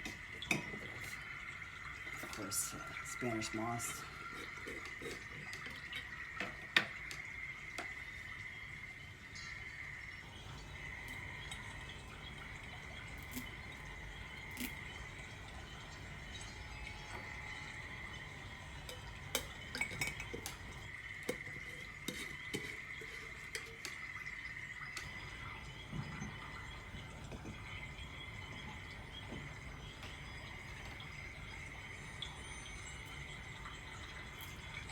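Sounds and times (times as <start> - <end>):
high-pitched hum: 9.4 - 21.4
clinks of small containers: 18.9 - 20.7.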